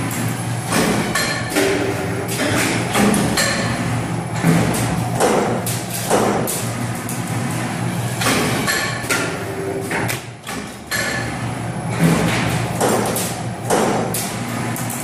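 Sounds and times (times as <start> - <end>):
steady machine hum: 0.0 - 15.0
machine shear thuds: 0.7 - 3.8, 4.4 - 6.6, 8.2 - 14.4.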